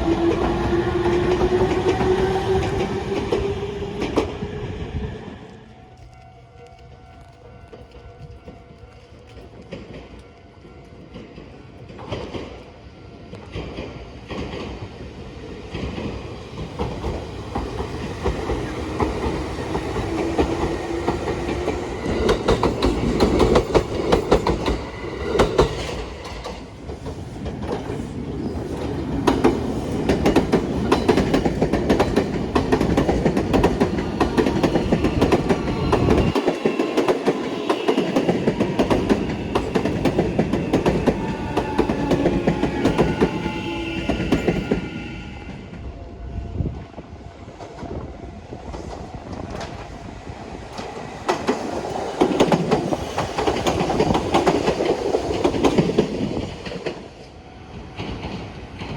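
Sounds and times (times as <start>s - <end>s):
electric train running past: 0.0s - 58.9s
wheels clicking over rail joints: 15.7s - 43.3s.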